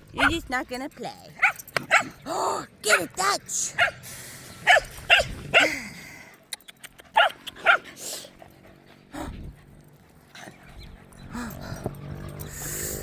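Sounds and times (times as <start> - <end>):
dog barking: 0.2 - 0.4, 1.4 - 2.2, 3.8 - 4.0, 4.7 - 5.7, 7.2 - 7.8.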